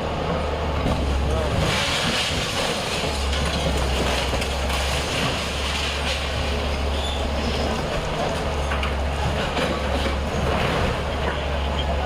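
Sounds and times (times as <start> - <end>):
diesel machine engine running: 0.0 - 12.0.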